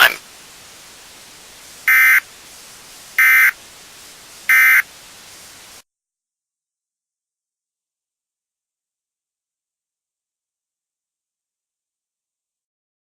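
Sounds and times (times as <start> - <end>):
faint hiss: 0.0 - 5.8.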